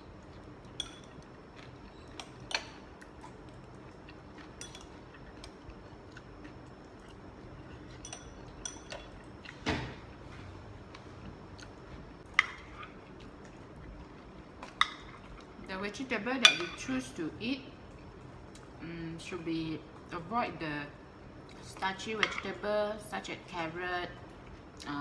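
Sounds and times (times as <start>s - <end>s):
cutlery clinking on a plate: 0.8s - 1.2s, 4.6s - 5.0s, 8.0s - 9.2s.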